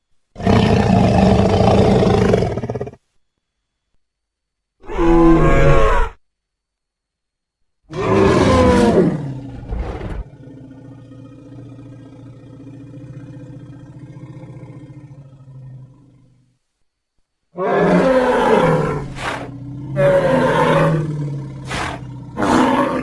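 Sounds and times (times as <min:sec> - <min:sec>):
creature roaring: 0:04.8 - 0:06.2, 0:07.9 - 0:10.5, 0:17.6 - 0:23.0
low rumbling growl: 0:08.0 - 0:16.4.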